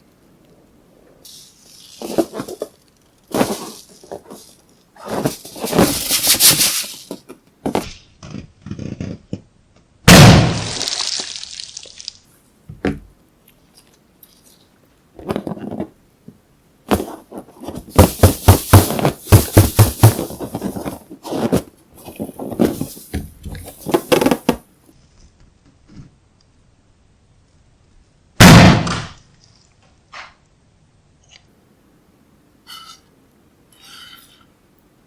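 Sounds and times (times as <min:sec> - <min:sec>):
slime squishing and crackling: 0:10.6 - 0:12.2.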